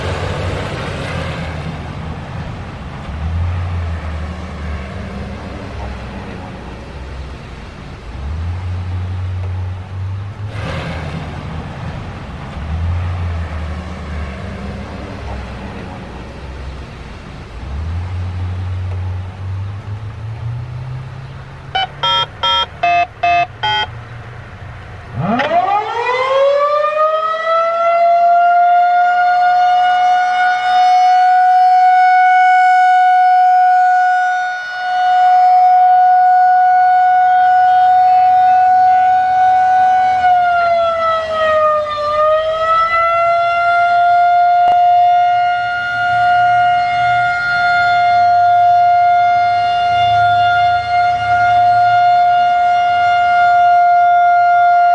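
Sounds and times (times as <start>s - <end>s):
short electronic beeps: 21.8s - 24.0s.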